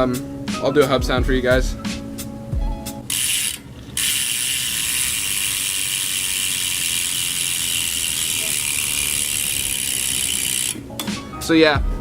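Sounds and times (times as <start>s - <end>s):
bicycle hub freewheeling buzz: 3.0s - 10.9s.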